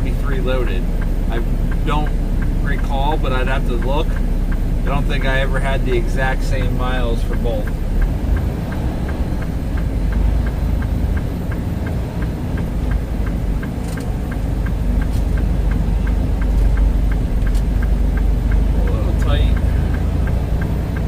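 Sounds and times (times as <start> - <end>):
light even ticking: 0.0 - 21.0
truck cab rumble: 0.0 - 21.0.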